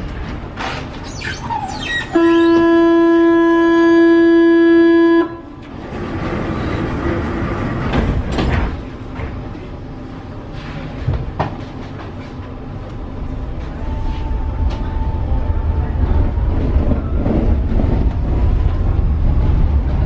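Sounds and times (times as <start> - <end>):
train pulling away: 13.3 - 20.0.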